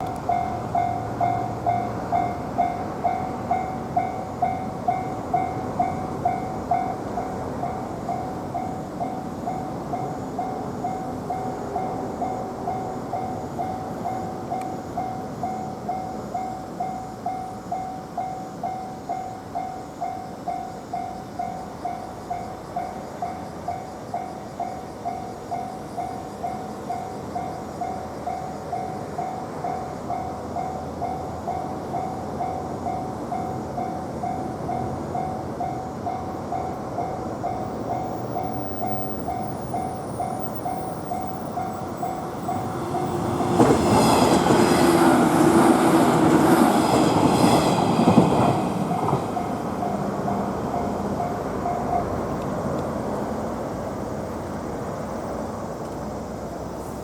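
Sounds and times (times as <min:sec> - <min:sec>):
level-crossing alarm bell ringing: 0:00.0 - 0:44.8.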